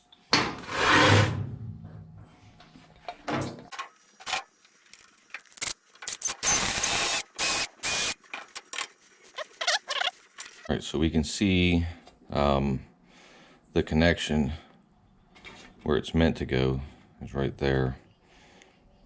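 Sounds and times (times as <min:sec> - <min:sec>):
loud scraping bursts: 0:00.6 - 0:01.4
clicks and knocks of parts: 0:03.1 - 0:09.0.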